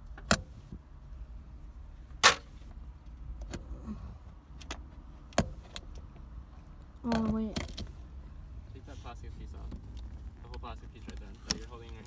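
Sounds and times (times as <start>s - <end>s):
low steady rumble: 0.0s - 12.0s
clicks and knocks of plastic parts: 9.7s - 12.0s.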